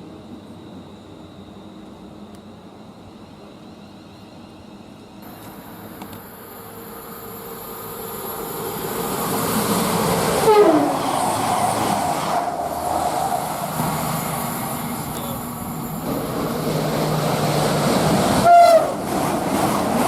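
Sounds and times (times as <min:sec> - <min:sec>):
train wheels rumbling on rails: 0:05.2 - 0:20.0
loud train horn blast: 0:10.4 - 0:11.0, 0:18.4 - 0:19.0.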